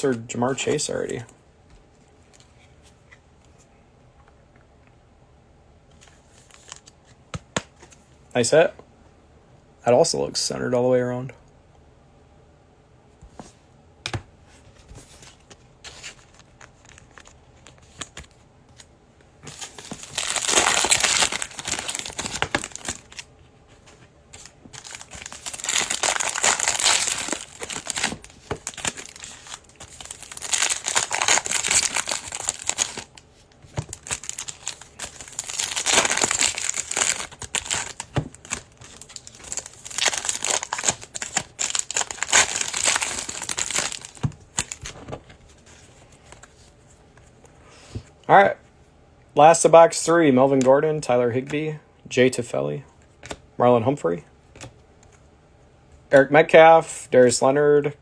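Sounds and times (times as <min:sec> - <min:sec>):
foil wrappers tearing and crinkling: 0:19.5 - 0:23.3, 0:24.4 - 0:33.2, 0:33.8 - 0:45.0.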